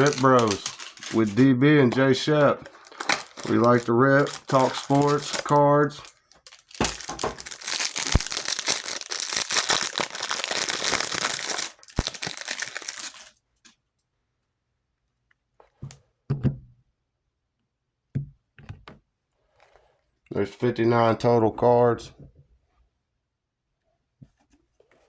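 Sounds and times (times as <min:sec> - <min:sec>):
cards knocking: 0:00.0 - 0:05.6, 0:06.4 - 0:08.8
wrapper tearing and crinkling: 0:00.0 - 0:13.3.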